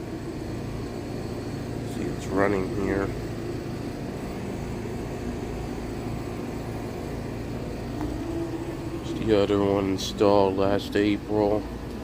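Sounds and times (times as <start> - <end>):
air conditioner condenser hum: 0.0 - 12.0.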